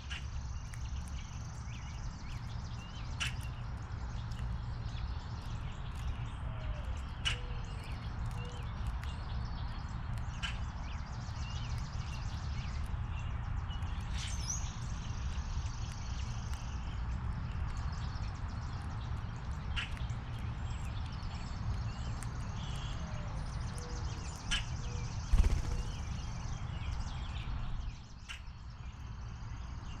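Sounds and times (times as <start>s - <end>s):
small birds chirping: 0.0s - 30.0s
steady low rumble: 14.7s - 30.0s.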